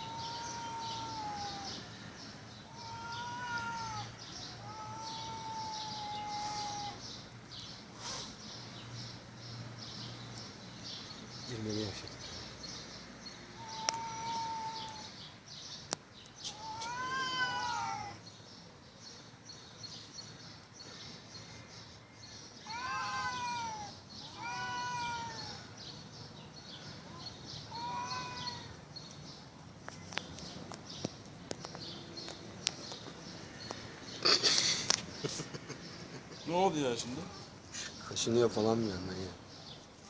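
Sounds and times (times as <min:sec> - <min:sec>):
cats yowling: 0:00.0 - 0:01.9, 0:02.7 - 0:07.0, 0:13.6 - 0:15.2, 0:16.5 - 0:18.2, 0:22.6 - 0:25.7, 0:27.1 - 0:28.8.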